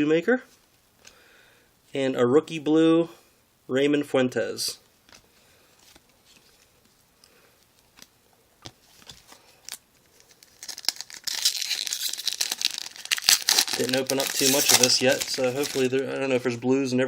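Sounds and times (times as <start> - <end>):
plastic wrapper crinkling and tearing: 8.9 - 16.0.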